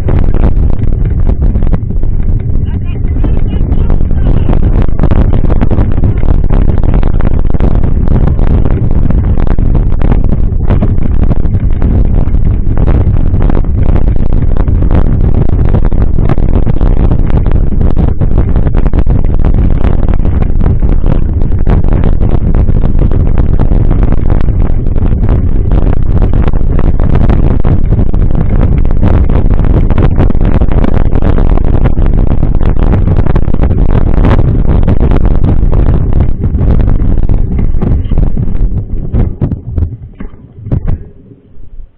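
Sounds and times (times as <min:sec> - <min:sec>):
wind rush on microphone: 0:00.0 - 0:41.9
bike knocks and rattles: 0:38.8 - 0:41.1.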